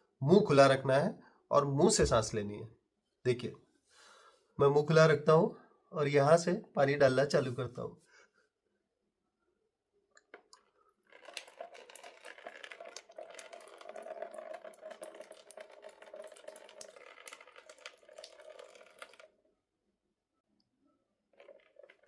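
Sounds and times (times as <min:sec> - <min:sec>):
water trickling and splattering from nose: 0:10.4 - 0:19.3.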